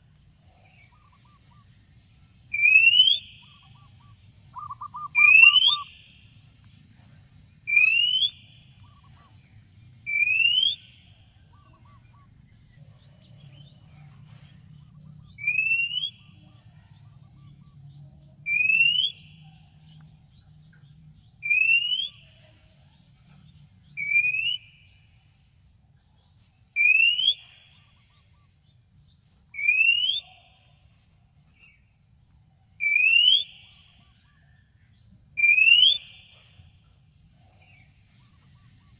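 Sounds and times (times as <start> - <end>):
bird whistling upward: 2.5 - 6.2, 7.7 - 9.0, 10.1 - 11.1, 15.2 - 16.4, 18.5 - 19.4, 21.4 - 22.3, 24.0 - 25.0, 26.8 - 28.5, 29.6 - 30.4, 32.8 - 34.1, 35.4 - 36.6.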